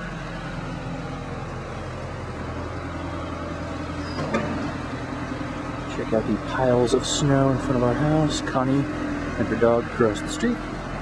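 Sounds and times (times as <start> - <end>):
motor engine humming: 0.0 - 11.0.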